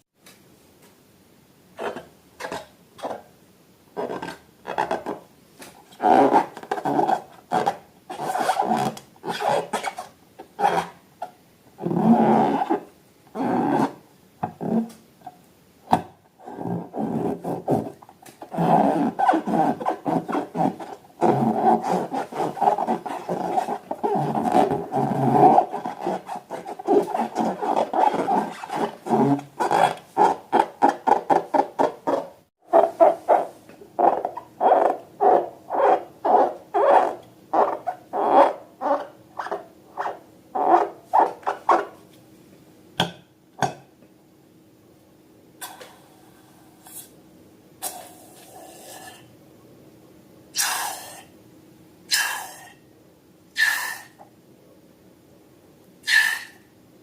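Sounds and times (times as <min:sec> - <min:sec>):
rubber balloons squeaking: 0:04.0 - 0:05.2, 0:05.9 - 0:11.0, 0:11.8 - 0:14.0, 0:16.4 - 0:41.9.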